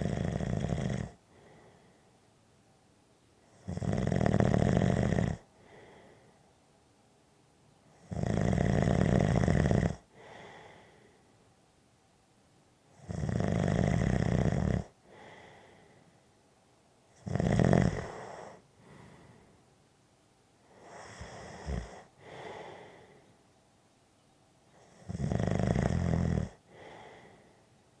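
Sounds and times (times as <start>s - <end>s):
person snoring: 0.0s - 1.2s, 3.6s - 5.9s, 8.0s - 10.8s, 13.0s - 15.7s, 17.2s - 19.4s, 20.8s - 23.2s, 24.8s - 27.5s
soft short breaths: 1.2s - 2.4s, 5.5s - 6.6s, 10.1s - 11.5s, 15.0s - 16.4s, 18.0s - 19.8s, 20.6s - 23.6s, 26.6s - 27.9s.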